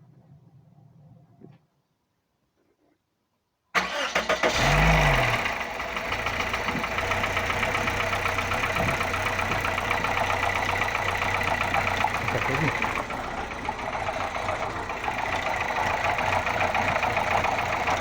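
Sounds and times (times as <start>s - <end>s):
car engine cranking and starting: 3.8s - 18.0s
engine idling with ticking knock: 3.9s - 18.0s.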